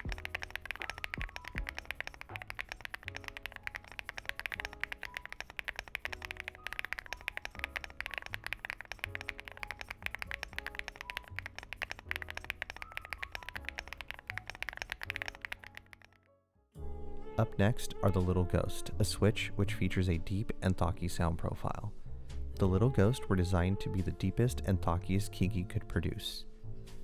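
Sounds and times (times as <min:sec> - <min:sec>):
mechanical keyboard typing: 0:00.0 - 0:16.2.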